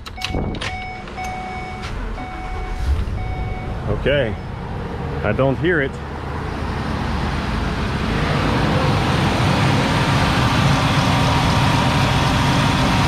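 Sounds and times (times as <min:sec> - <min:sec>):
van engine running: 0:00.8 - 0:13.0.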